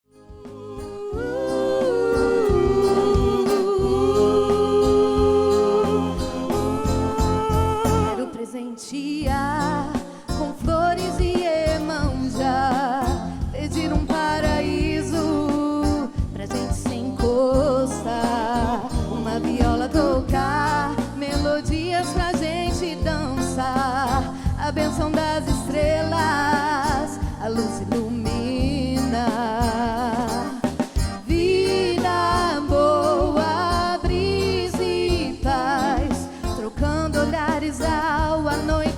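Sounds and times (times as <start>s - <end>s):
instrumental accompaniment: 0.1s - 8.4s, 9.2s - 38.9s
person singing with vibrato: 0.1s - 38.9s.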